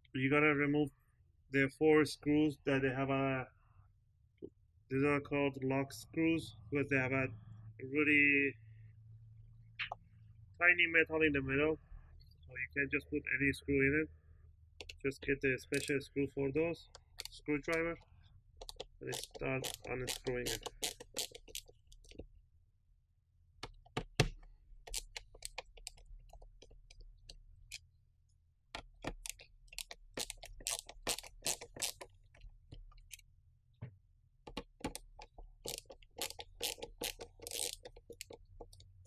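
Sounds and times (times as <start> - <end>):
screwdriver clicking on screws: 18.6 - 22.2, 24.2 - 26.1, 29.0 - 32.1, 34.5 - 38.9
metal scraping on plastic: 19.0 - 22.2.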